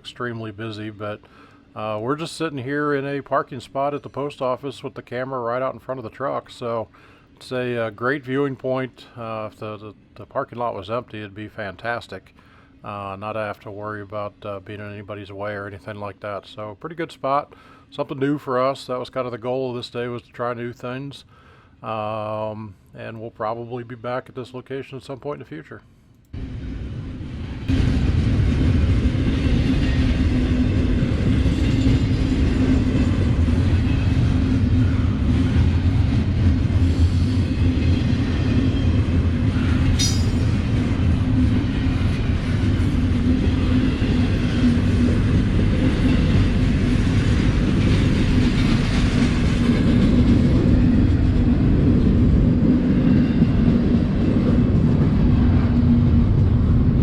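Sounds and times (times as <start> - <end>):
train wheels rumbling on rail: 26.4 - 57.0
low hum: 39.9 - 41.8
sharp click: 40.0 - 40.7.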